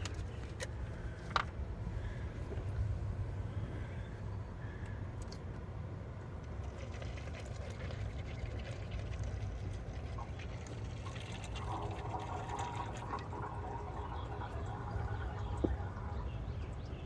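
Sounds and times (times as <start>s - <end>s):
steady low hum: 0.0s - 17.0s
oil trickling and gurgling: 6.2s - 17.0s.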